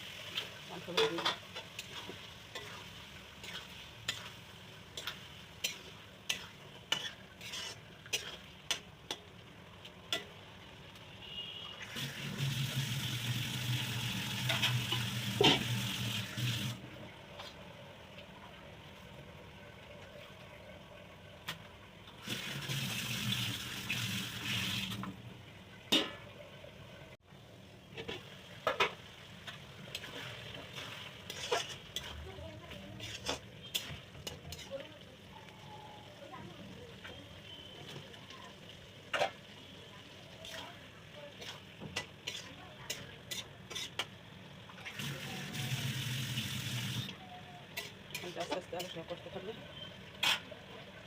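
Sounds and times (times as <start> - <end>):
meat sizzling in oil: 0.0 - 10.9, 11.8 - 16.8, 28.2 - 49.4
spoon scraping cooking pot: 5.0 - 8.8, 31.3 - 32.2, 33.0 - 34.7, 41.4 - 44.1.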